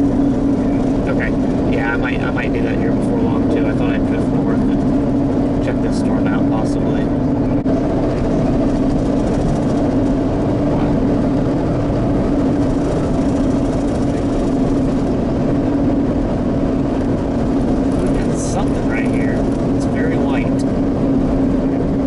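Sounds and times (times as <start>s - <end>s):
vehicle interior road drone: 0.0s - 22.0s.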